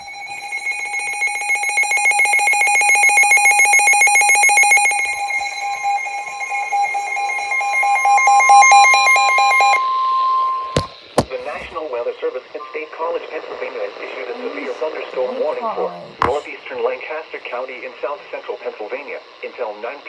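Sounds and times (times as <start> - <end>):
steady alarm tone: 0.0 - 11.0.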